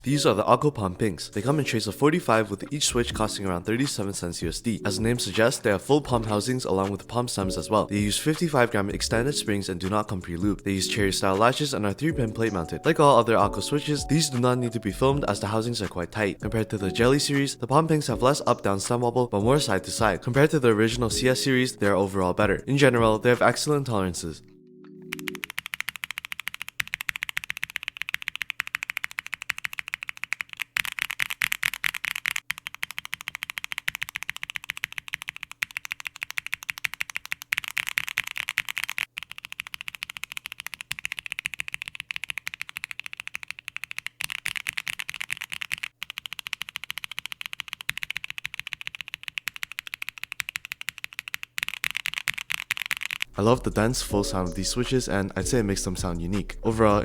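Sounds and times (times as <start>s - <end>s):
mechanical keyboard typing: 3.2s - 17.5s, 25.0s - 53.3s.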